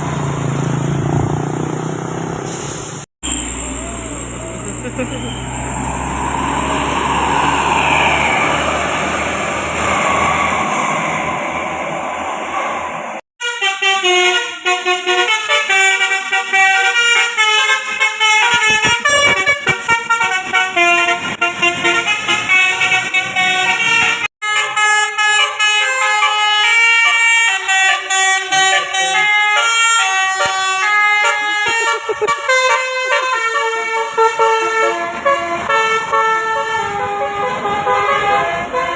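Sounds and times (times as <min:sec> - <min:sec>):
road traffic noise: 0:00.0 - 0:38.9
musical bus horn tune: 0:13.4 - 0:38.9.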